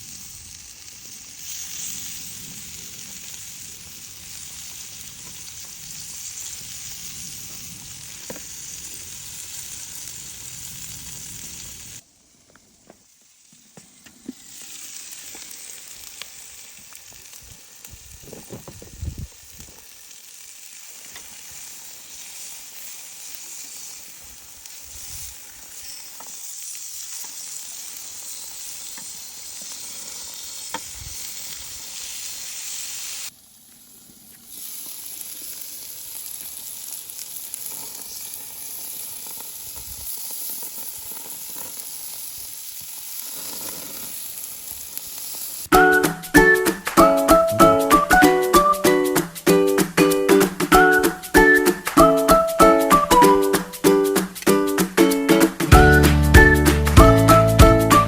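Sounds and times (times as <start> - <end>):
chicken sizzling: 0.0 - 58.0.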